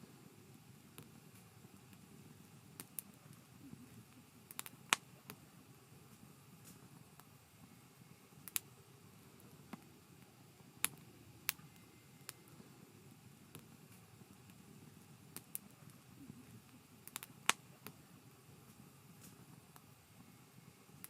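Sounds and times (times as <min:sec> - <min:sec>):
low rumble of flames: 0:00.0 - 0:21.0
campfire crackling and popping: 0:00.2 - 0:21.0.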